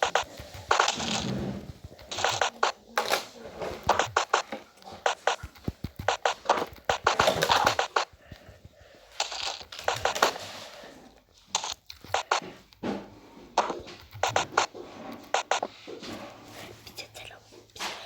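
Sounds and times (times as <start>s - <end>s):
fidget toy clicks and pops: 0.0s - 3.2s, 3.8s - 10.4s, 11.5s - 12.4s, 13.6s - 14.7s, 15.3s - 15.7s.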